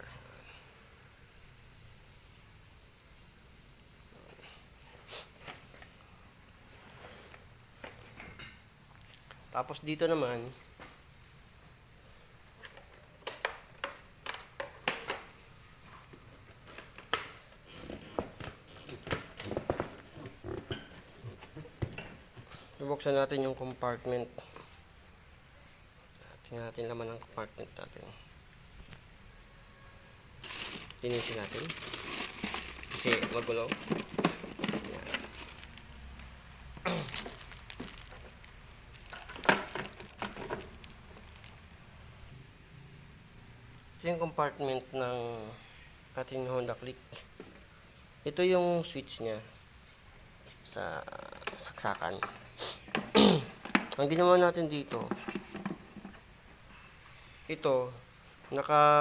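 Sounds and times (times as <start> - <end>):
rustling and shuffling: 14.2 - 26.0, 30.4 - 41.9, 49.8 - 57.1
knocks and clatters in plastic compartment: 17.8 - 20.9, 30.4 - 35.8, 39.0 - 41.5, 54.9 - 56.3
small objects clicking and knocking: 30.4 - 41.8.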